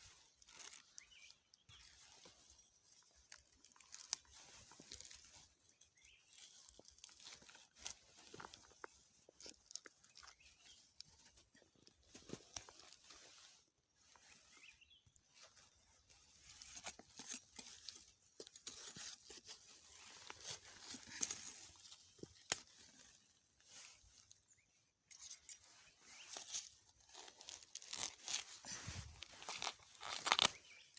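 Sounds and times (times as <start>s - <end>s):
dry leaves rustling and crackling: 0.1s - 2.4s, 3.0s - 5.7s, 16.3s - 24.3s, 25.6s - 30.8s
plant stems snapping: 27.5s - 30.6s.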